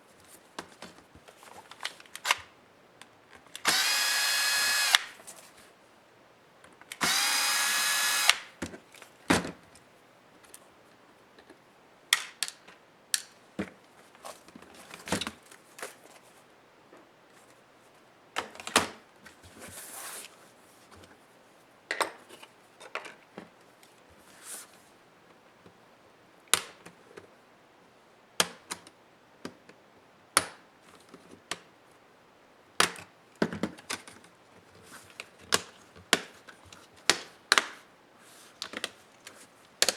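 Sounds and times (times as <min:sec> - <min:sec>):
electric screwdriver whirring: 0:03.6 - 0:05.2, 0:07.0 - 0:08.5
clicks and taps of small parts: 0:11.4 - 0:13.7.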